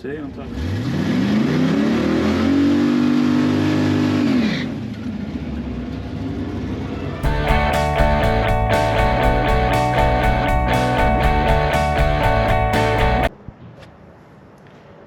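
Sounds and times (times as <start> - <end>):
engine revving: 0.3 - 13.3
rock music with guitar: 7.2 - 13.3.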